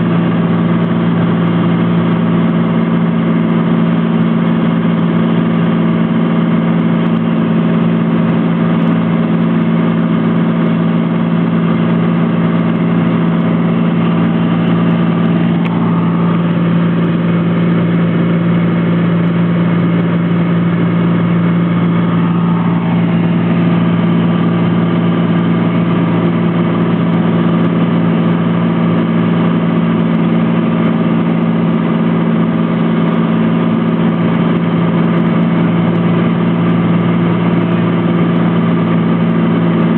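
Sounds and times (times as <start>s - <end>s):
airplane engine and propeller drone: 0.0s - 39.9s.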